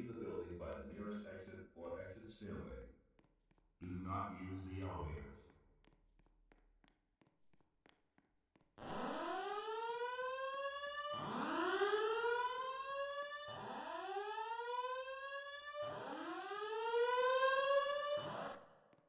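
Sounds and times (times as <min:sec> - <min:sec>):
fire alarm whoop tone: 0:08.9 - 0:18.7.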